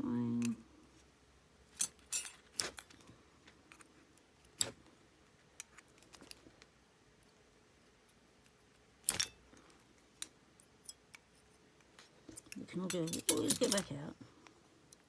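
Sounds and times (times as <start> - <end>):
small metal clicks: 8.4 - 14.0.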